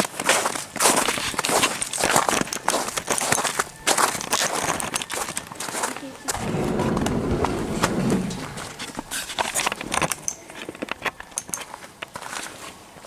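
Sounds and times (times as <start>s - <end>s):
low rumble: 6.3s - 9.2s.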